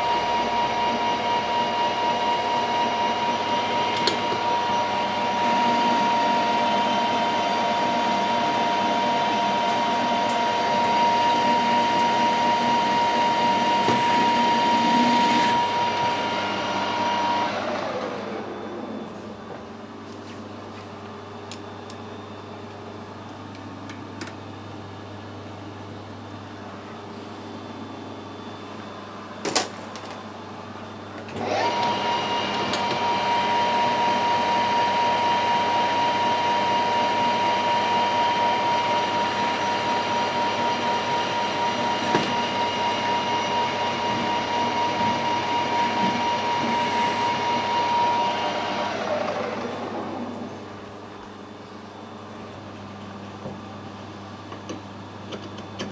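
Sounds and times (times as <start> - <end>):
electric machine tool whining: 0.1 - 18.9, 31.3 - 50.4.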